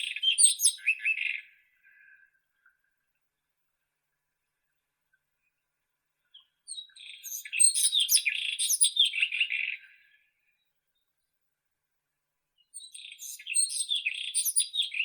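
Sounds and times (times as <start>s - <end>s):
bird singing: 0.0s - 2.3s, 6.2s - 11.2s, 12.6s - 15.0s.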